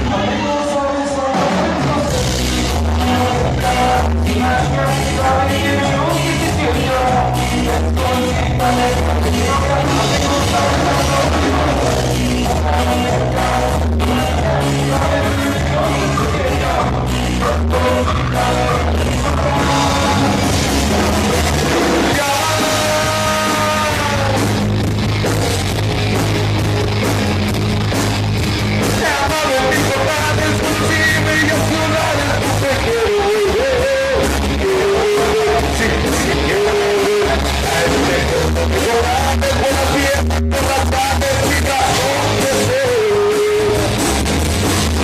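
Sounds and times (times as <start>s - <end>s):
singer's voice: 0.0s - 25.0s, 28.5s - 45.0s
rock band playing live: 0.0s - 45.0s.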